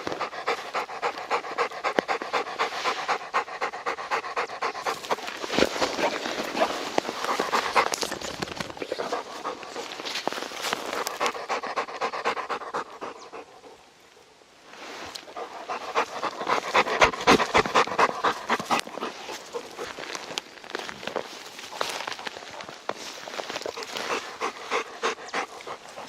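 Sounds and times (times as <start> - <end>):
dog panting rapidly: 0.0 - 8.0, 11.0 - 13.8, 15.4 - 19.9, 23.7 - 26.0.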